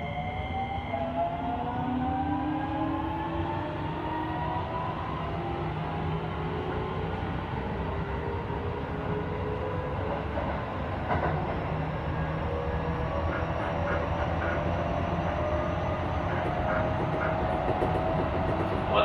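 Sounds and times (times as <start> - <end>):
wheels rumbling on rail: 2.8 - 19.0
wheels clicking over rail joints: 16.2 - 19.0.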